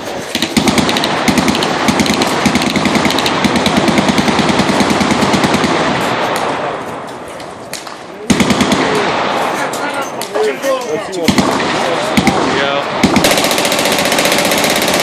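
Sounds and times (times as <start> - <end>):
machine-gun fire: 0.3 - 6.5, 8.3 - 9.5, 11.3 - 15.0.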